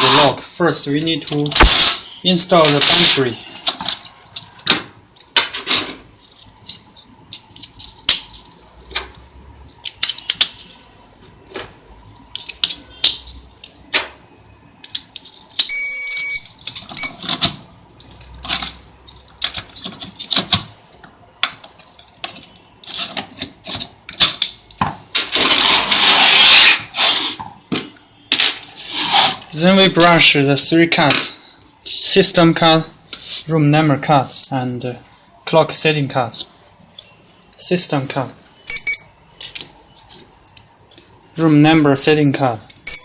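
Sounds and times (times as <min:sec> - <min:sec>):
short high electronic beep: 0:15.7 - 0:17.2, 0:38.7 - 0:39.2
scraping rub of plastic: 0:25.4 - 0:27.4, 0:28.6 - 0:29.5.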